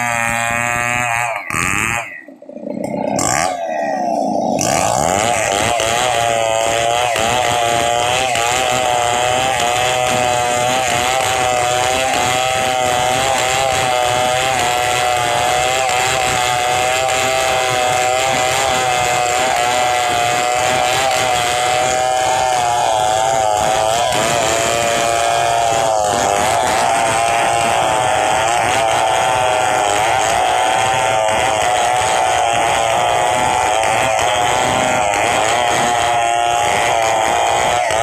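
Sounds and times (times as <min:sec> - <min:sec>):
chainsaw running at high speed: 0:00.0 - 0:38.0.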